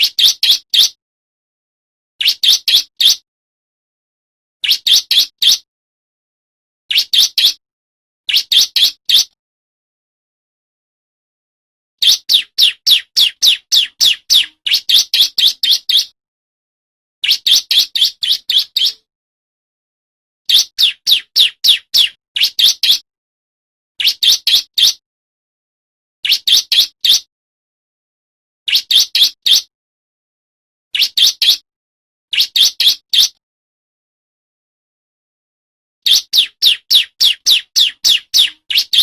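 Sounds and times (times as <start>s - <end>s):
bird singing high chirps: 0.0s - 1.0s, 2.2s - 3.2s, 4.6s - 5.6s, 6.9s - 7.6s, 8.3s - 9.4s, 12.0s - 16.2s, 17.2s - 19.1s, 20.5s - 23.0s, 24.0s - 25.0s, 26.2s - 27.3s, 28.7s - 29.7s, 31.0s - 31.6s, 32.3s - 33.4s, 36.0s - 39.0s.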